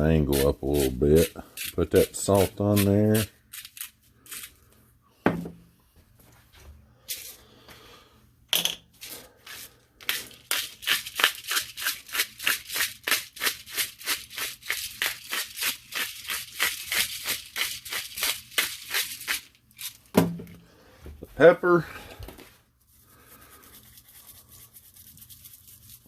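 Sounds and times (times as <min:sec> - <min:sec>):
salt shaker rattling: 0:09.0 - 0:20.0.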